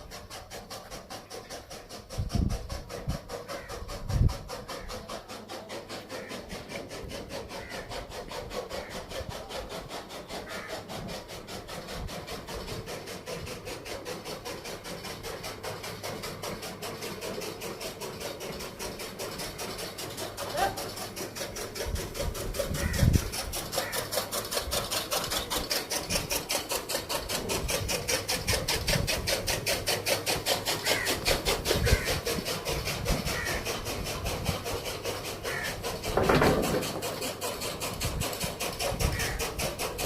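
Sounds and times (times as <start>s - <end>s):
engine running with even beat: 0.0s - 40.0s.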